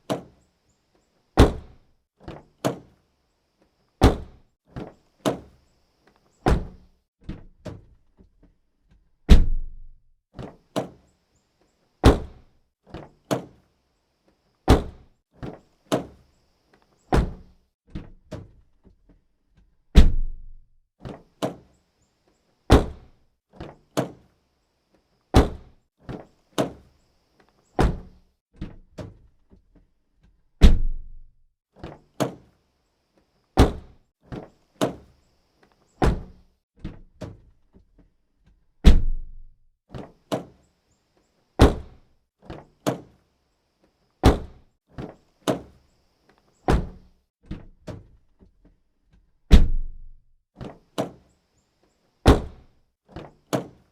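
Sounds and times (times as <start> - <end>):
car door shutting: 6.5 - 6.8, 27.8 - 28.1, 46.7 - 47.0, 52.3 - 52.5.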